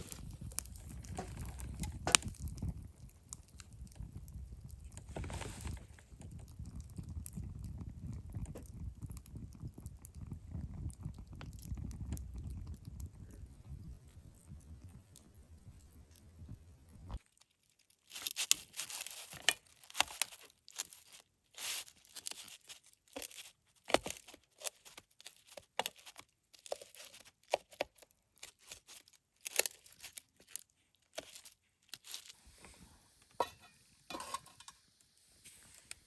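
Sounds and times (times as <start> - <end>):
crisp tearing and crunching: 0.0 - 7.4, 17.1 - 32.4.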